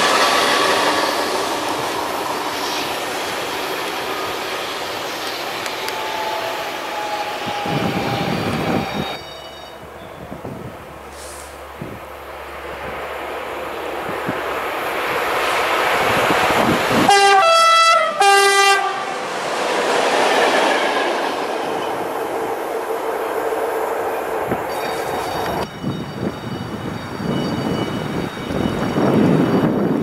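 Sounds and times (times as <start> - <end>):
train wheels rumbling on rails: 0.0 - 17.5, 18.8 - 30.0
train horn blasts: 5.7 - 9.8, 17.0 - 19.2.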